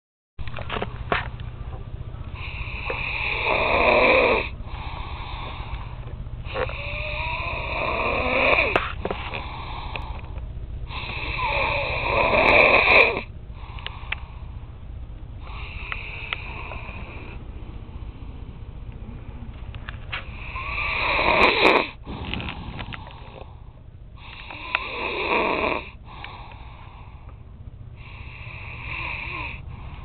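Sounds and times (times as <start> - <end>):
person snoring: 2.4 - 5.7, 6.5 - 10.0, 10.9 - 14.0, 20.4 - 23.6, 24.2 - 26.5, 28.0 - 30.0
rasping breaths: 2.4 - 14.7, 20.2 - 27.4, 28.0 - 30.0.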